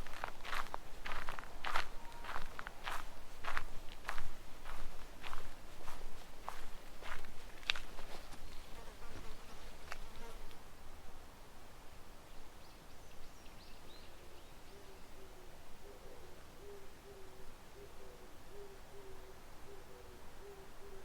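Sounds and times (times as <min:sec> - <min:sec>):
footsteps on a path: 0:00.0 - 0:10.6.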